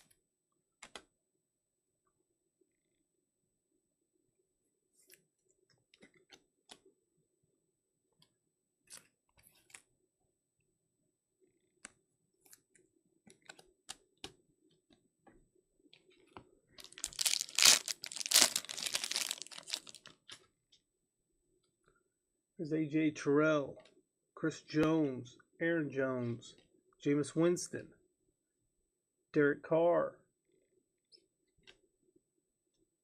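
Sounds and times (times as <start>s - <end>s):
plastic wrapper crinkling and tearing: 16.8s - 20.2s.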